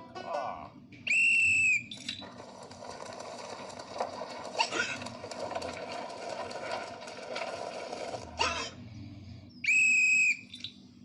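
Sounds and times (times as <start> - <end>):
high whistle blast: 1.1 - 2.0, 9.6 - 10.6.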